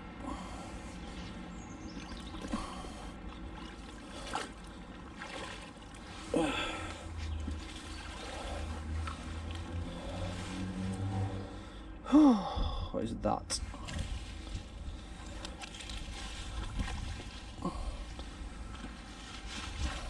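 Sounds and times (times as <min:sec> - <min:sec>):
water trickling and dripping: 0:01.9 - 0:11.4
short grunt: 0:06.3 - 0:07.0.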